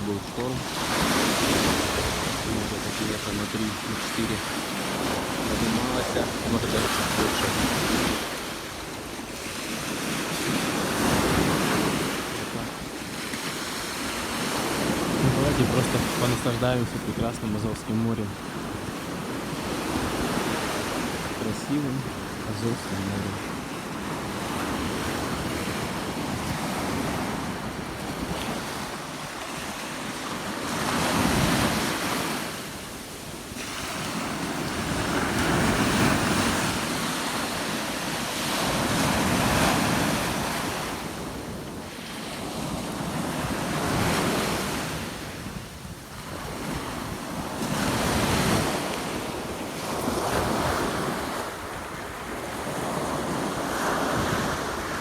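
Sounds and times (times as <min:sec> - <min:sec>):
wind buffeting microphone: 0:00.0 - 0:17.3, 0:30.4 - 0:38.0
surf breaking on shore: 0:00.0 - 0:55.0.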